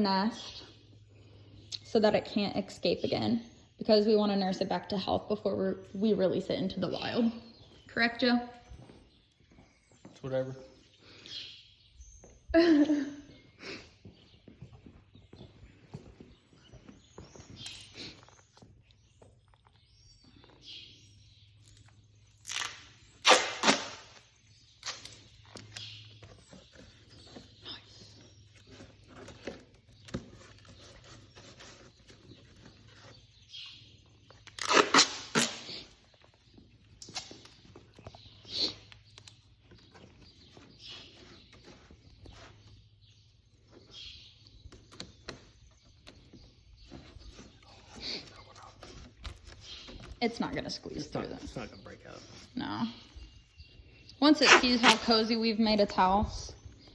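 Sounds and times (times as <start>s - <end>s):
duct tape ripping off roll: 21.6s - 25.3s, 34.4s - 36.0s, 54.4s - 55.2s.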